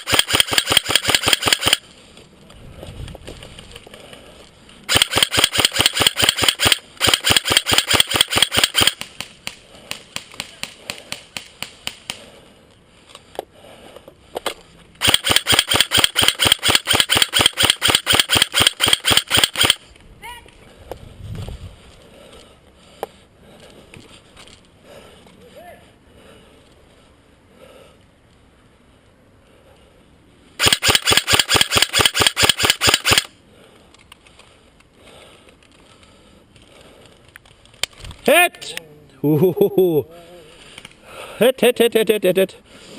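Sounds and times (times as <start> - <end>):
airsoft rifle full auto burst: 0.0 - 1.8, 4.9 - 9.0, 15.0 - 19.8, 30.6 - 33.3.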